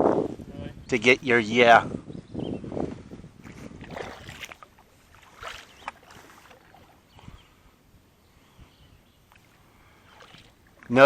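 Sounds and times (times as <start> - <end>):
water lapping against hull: 2.9 - 11.0.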